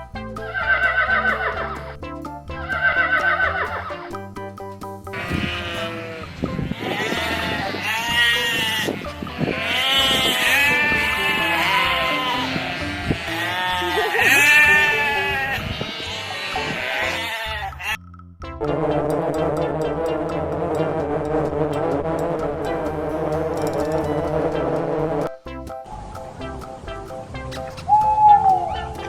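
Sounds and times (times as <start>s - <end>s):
background music: 0.0s - 29.0s
farm animal bleating: 5.1s - 18.0s.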